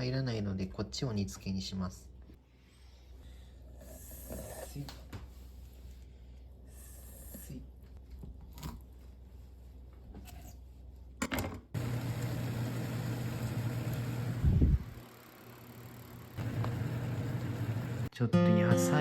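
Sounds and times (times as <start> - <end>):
fan humming with hiss: 11.8 - 18.1.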